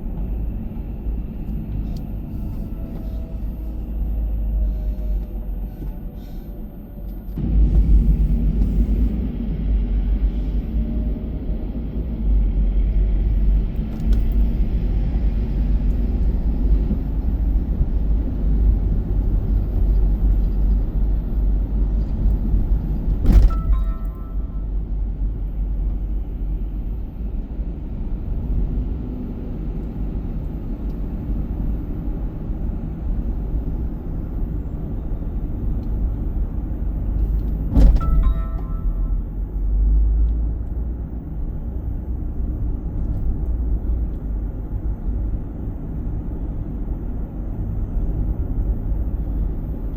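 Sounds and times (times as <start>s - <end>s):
car driving rumble: 0.0s - 49.6s
short high tone: 38.0s - 39.4s.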